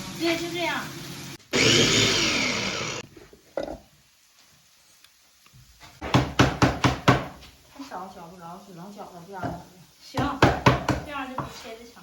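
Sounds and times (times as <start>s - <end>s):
electric food chopper whining: 1.5s - 3.0s.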